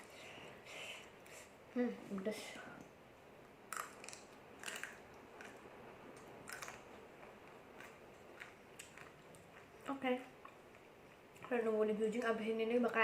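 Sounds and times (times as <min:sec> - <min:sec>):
crunching crispy snack: 0:03.7 - 0:05.6, 0:06.4 - 0:09.6.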